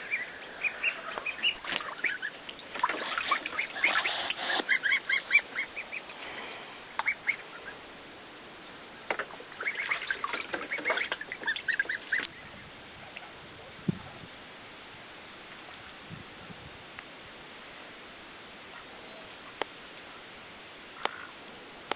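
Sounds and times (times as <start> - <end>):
ducks or geese calling: 0.0 - 6.2, 6.9 - 7.8, 9.5 - 12.6.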